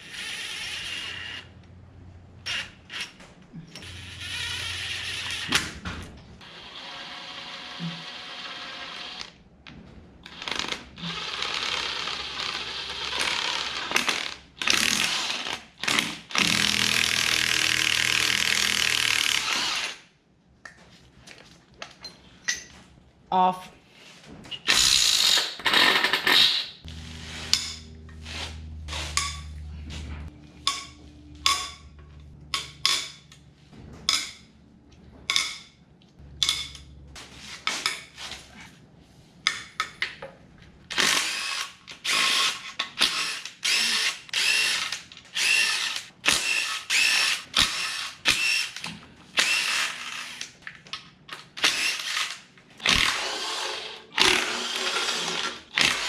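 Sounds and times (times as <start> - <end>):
power tool spinning bolts: 10.3 - 20.0, 24.7 - 26.8, 40.9 - 50.5, 51.6 - 56.0.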